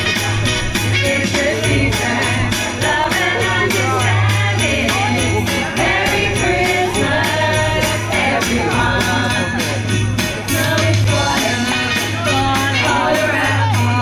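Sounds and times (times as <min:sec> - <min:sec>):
musical backing with beat: 0:00.0 - 0:14.0
people singing a carol: 0:00.0 - 0:14.0.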